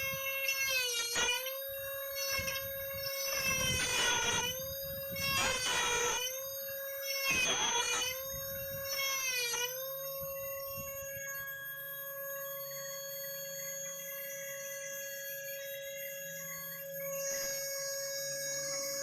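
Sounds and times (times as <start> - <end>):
rotary tool carving wood: 0.0 - 10.2.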